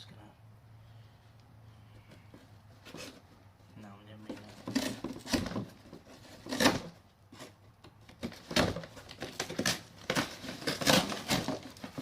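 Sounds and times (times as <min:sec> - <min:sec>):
short scrapes and knocks: 0:01.9 - 0:03.4, 0:04.2 - 0:12.0
packaging rustling and crinkling: 0:08.1 - 0:12.0.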